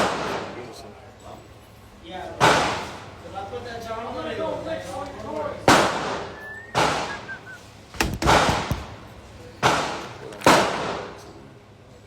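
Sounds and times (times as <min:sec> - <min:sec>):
gunshots with echo: 0:08.0 - 0:11.0.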